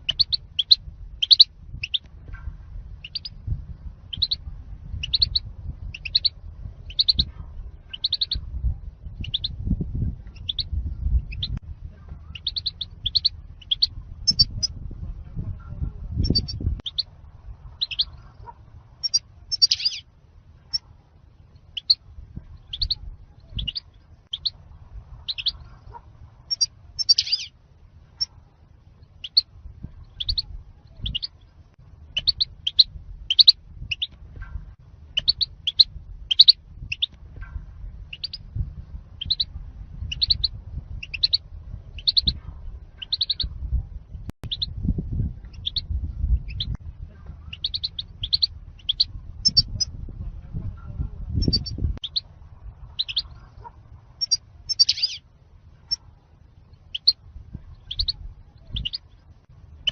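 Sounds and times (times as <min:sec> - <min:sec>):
goldfinch chirping: 0:00.0 - 0:02.1, 0:03.0 - 0:03.4, 0:04.1 - 0:04.4, 0:05.0 - 0:07.3, 0:07.9 - 0:08.4, 0:10.3 - 0:10.7, 0:12.3 - 0:14.7, 0:16.2 - 0:17.1, 0:17.8 - 0:18.2, 0:19.0 - 0:20.0, 0:21.7 - 0:22.0, 0:22.6 - 0:24.6, 0:25.3 - 0:27.5, 0:29.2 - 0:31.4, 0:32.1 - 0:34.2, 0:35.2 - 0:37.2, 0:38.1 - 0:38.4, 0:39.2 - 0:41.4, 0:42.0 - 0:42.4, 0:43.0 - 0:43.5, 0:45.5 - 0:45.8, 0:47.5 - 0:49.9, 0:51.4 - 0:52.3, 0:52.9 - 0:55.2, 0:56.7 - 0:57.2, 0:57.8 - 0:59.1
low rumble: 0:00.0 - 0:59.9.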